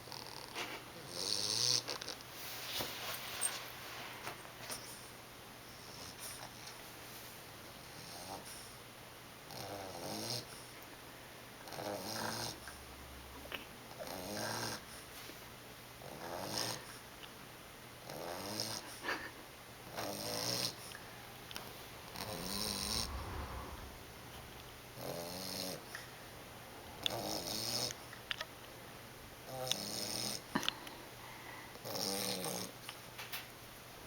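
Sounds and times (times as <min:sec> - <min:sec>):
puppy snoring: 0:00.0 - 0:02.2, 0:07.8 - 0:08.8, 0:09.4 - 0:10.7, 0:11.6 - 0:12.8, 0:13.9 - 0:15.1, 0:16.0 - 0:17.1, 0:18.0 - 0:26.2, 0:27.0 - 0:28.2, 0:29.4 - 0:30.7, 0:31.7 - 0:32.8.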